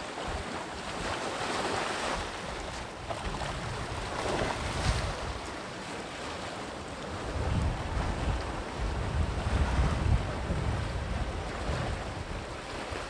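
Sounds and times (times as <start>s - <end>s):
sea waves breaking: 0.0s - 13.0s
wind buffeting microphone: 2.1s - 5.6s, 7.1s - 13.0s.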